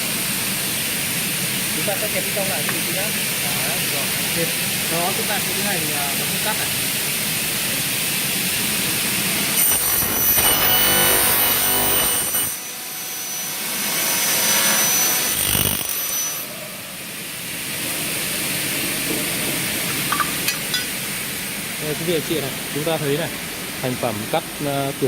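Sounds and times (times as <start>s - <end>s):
saw motors running: 9.4s - 16.5s
saw cutting aluminium with whine: 9.4s - 16.8s.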